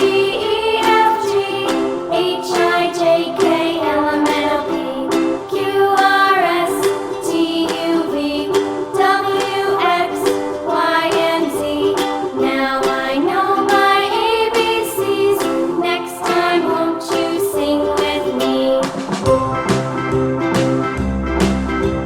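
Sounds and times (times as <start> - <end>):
upbeat children's music: 0.0 - 22.0.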